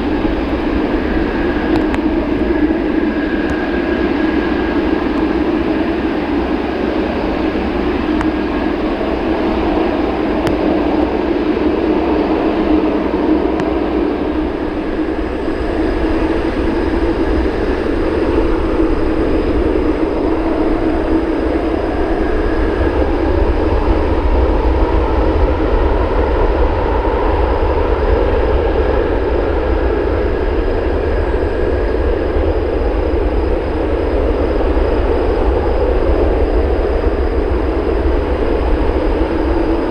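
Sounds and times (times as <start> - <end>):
faint whining tones: 0.0 - 39.9
jet engines roaring: 0.0 - 39.9.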